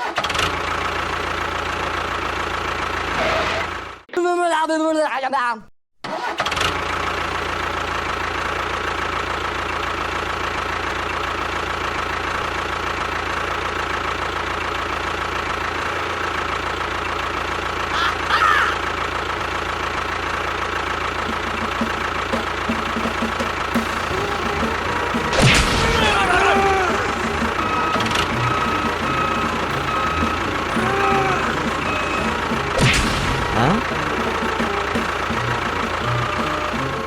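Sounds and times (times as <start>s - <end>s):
motor running: 20.4s - 37.0s.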